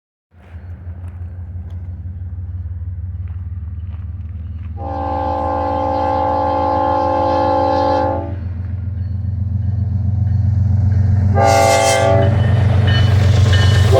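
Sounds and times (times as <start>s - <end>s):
diesel locomotive rumbling: 0.3s - 13.9s
locomotive air horn: 4.8s - 8.5s, 11.3s - 12.5s.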